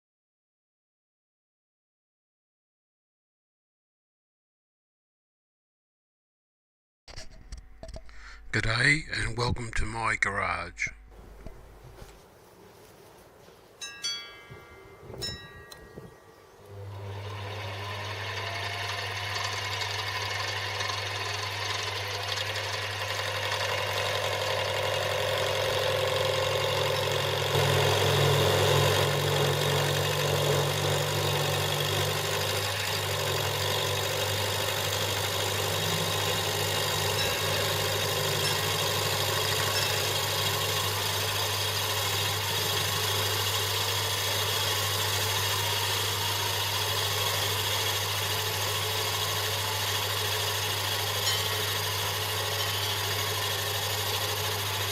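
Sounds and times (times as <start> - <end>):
metal lathe running: 16.7 - 54.9.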